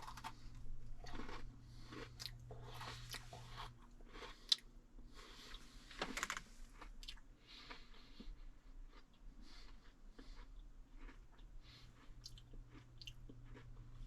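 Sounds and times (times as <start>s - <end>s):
cookie crunching: 0.0s - 4.7s, 8.9s - 14.0s.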